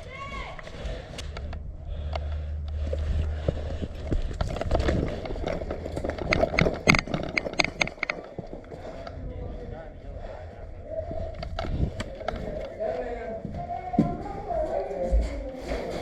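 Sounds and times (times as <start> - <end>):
low rumble on microphone: 0.0 - 16.0
quick footsteps: 0.0 - 16.0
sharp clicks and knocks: 0.6 - 9.2.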